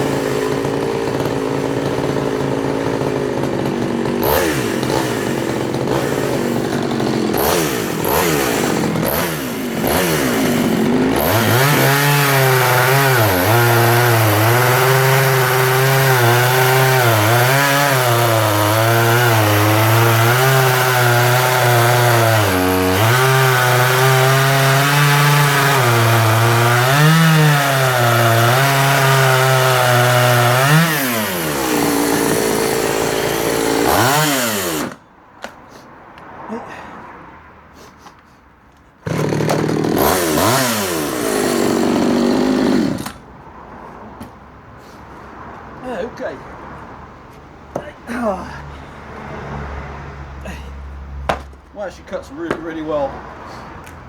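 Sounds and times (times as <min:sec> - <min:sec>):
chainsaw cutting wood: 0:00.0 - 0:35.6, 0:39.0 - 0:43.3.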